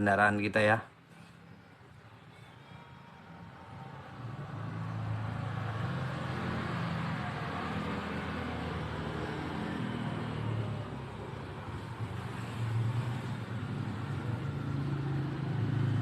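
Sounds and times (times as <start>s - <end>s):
vehicle engine hum: 3.2s - 16.0s.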